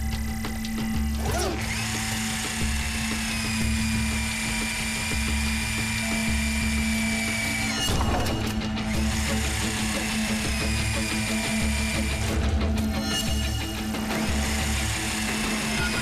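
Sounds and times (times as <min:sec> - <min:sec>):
music with low beat: 0:00.0 - 0:16.0
high electronic whine: 0:09.8 - 0:16.0.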